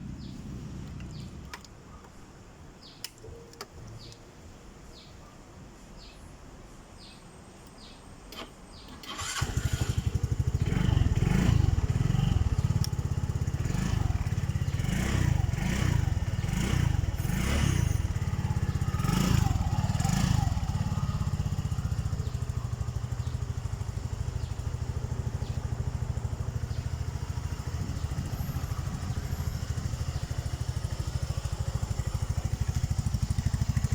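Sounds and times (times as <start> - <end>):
scooter engine starting: 8.3 - 33.9
scooter engine revving: 9.0 - 33.9
scooter engine idling: 9.1 - 33.9.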